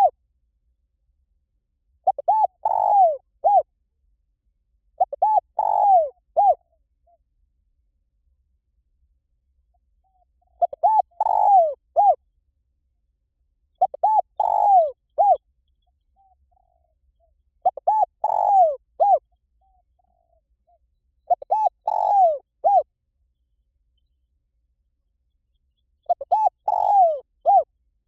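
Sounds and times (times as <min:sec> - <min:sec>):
dove cooing: 0:02.0 - 0:03.7, 0:05.0 - 0:06.6, 0:10.2 - 0:12.2, 0:13.8 - 0:15.4, 0:17.6 - 0:22.9, 0:26.1 - 0:27.7.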